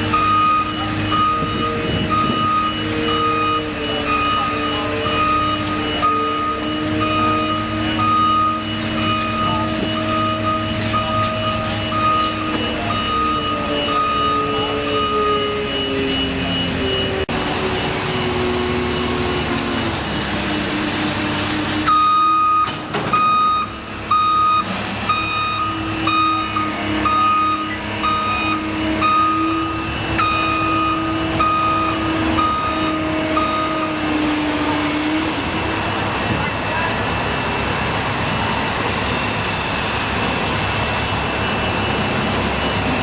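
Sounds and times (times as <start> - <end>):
reversing alarm beeping: 0.0 - 19.8, 21.8 - 34.2
heavy vehicle engine running: 0.0 - 43.0.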